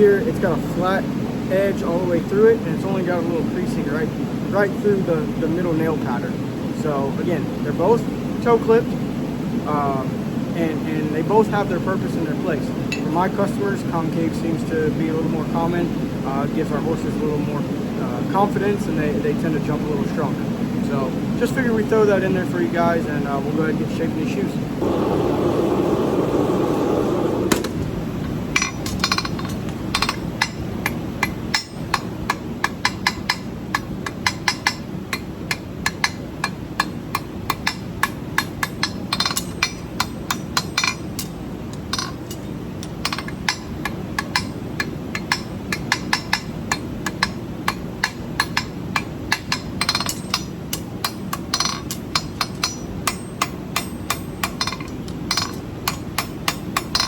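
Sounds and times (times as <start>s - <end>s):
steady rushing noise: 24.6s - 30.0s
hammer striking horseshoe on anvil: 28.6s - 57.0s.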